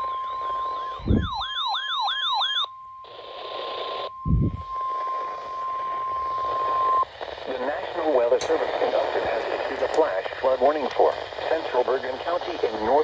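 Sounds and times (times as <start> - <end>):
siren wailing: 0.0 - 7.1
steady alarm tone: 4.0 - 7.1.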